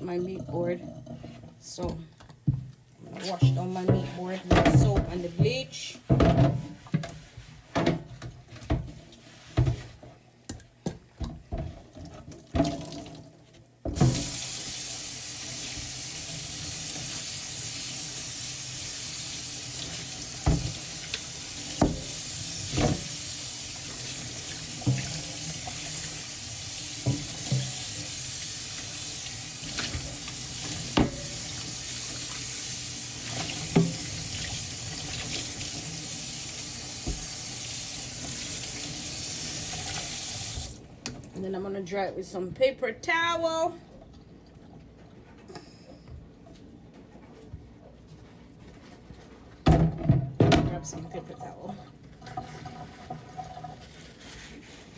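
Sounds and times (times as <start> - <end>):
water running into a sink: 11.9 - 41.3, 50.9 - 54.8
knocks at a kitchen sink: 20.4 - 20.8, 21.8 - 23.1, 37.0 - 37.4, 49.7 - 50.8.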